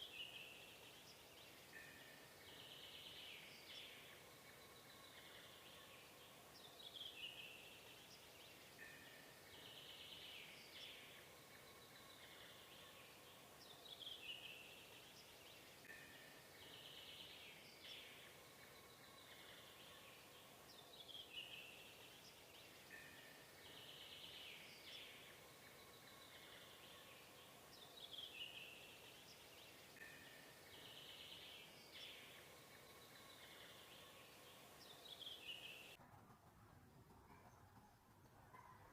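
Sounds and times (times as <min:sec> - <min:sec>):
low steady hiss: 0:00.0 - 0:36.0.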